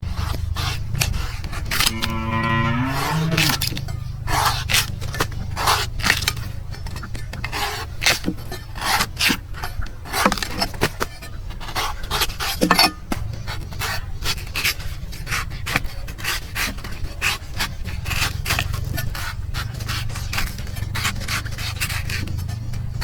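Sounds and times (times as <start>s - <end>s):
low rumble: 0.5s - 4.3s
cow mooing: 1.7s - 3.8s
knife chopping coconut: 7.4s - 22.4s.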